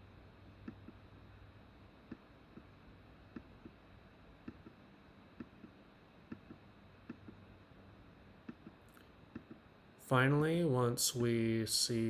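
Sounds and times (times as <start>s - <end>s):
faint room hiss: 0.0s - 12.0s
computer mouse clicking: 4.4s - 4.8s, 5.4s - 7.4s, 8.4s - 9.6s.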